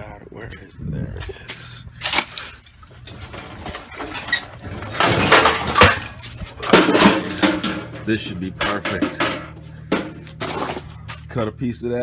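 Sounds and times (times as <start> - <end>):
scrap metal clattering and scraping: 2.0 - 11.3.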